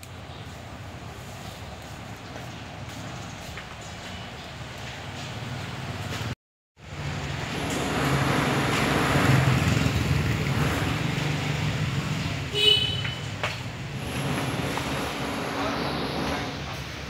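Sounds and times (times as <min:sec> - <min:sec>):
street traffic noise: 0:00.0 - 0:17.0
passing vehicle: 0:05.0 - 0:12.6.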